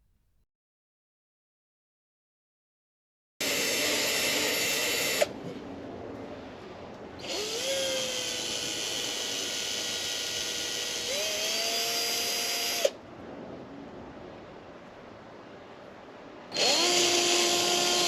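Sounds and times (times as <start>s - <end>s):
power drill drilling metal: 3.4s - 5.3s, 7.2s - 12.9s, 16.5s - 18.0s.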